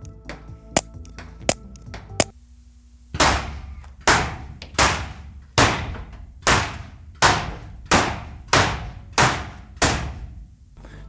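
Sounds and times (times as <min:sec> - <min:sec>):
bullets striking sheet metal: 0:03.1 - 0:11.0.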